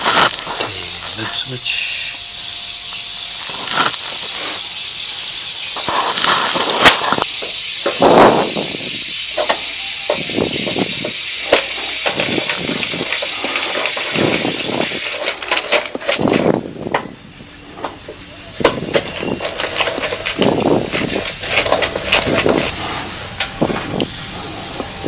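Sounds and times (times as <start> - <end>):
steady hiss: 0.0 - 25.0
hands handling washer parts: 17.8 - 22.8.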